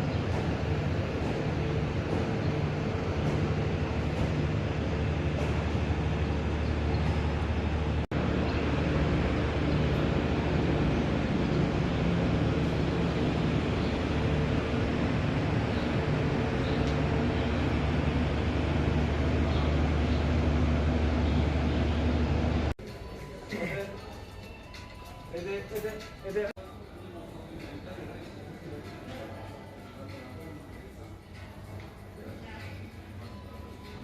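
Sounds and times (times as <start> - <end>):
large engine droning: 0.0 - 22.8.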